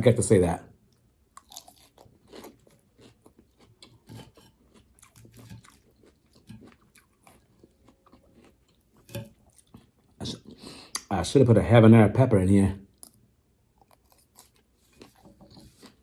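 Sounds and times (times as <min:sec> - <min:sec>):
person chewing salad crunches: 0:00.9 - 0:11.1, 0:12.9 - 0:16.0.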